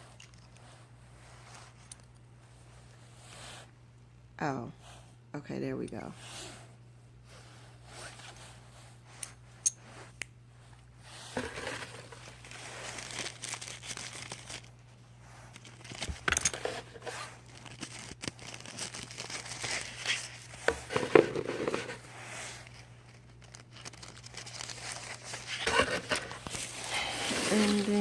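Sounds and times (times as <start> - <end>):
wrapping crinkling and tearing: 11.3 - 14.8, 15.4 - 28.0.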